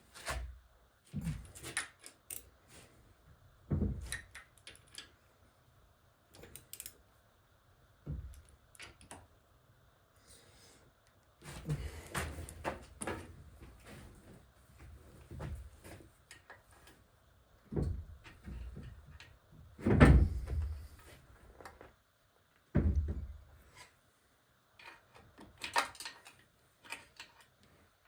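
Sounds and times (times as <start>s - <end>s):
small clicks: 6.3s - 7.0s.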